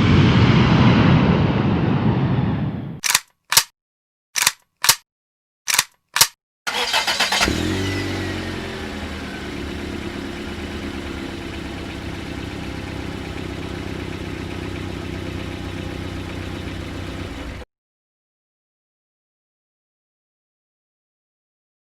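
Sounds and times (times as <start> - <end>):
vehicle engine idling: 6.7 - 17.6.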